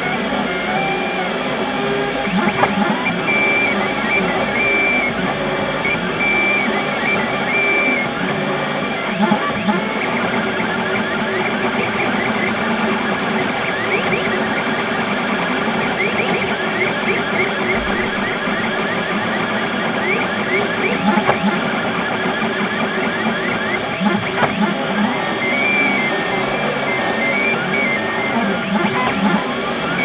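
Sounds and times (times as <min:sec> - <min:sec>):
steady mechanical hum: 0:00.0 - 0:30.0
stepper motors whining: 0:00.0 - 0:30.0.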